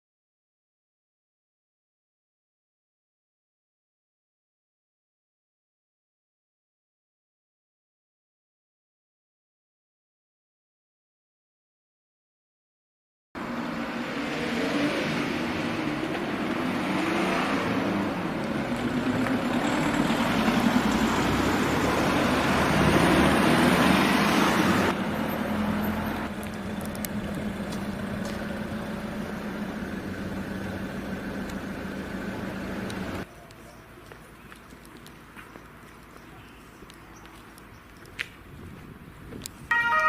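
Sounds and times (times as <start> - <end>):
road noise: 13.4 - 40.0
vehicle engine running: 17.9 - 33.2.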